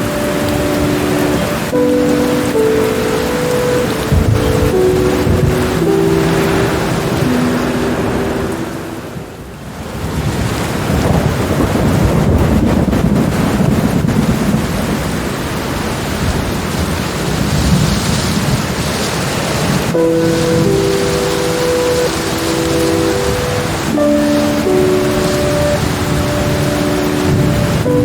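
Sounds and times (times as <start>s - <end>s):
soft music tones: 0.0s - 9.6s, 19.9s - 28.0s
rolling thunder: 0.0s - 28.0s
steady rain: 0.0s - 28.0s.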